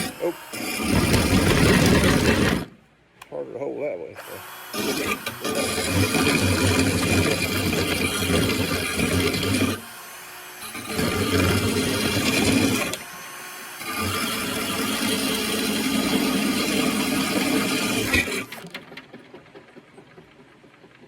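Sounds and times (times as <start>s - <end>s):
grinding stone on steel blade: 0.0s - 2.7s, 4.2s - 10.0s.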